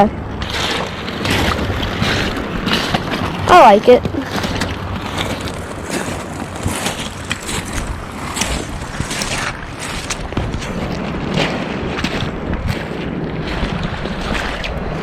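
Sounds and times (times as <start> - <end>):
river current rushing: 0.0 - 11.4.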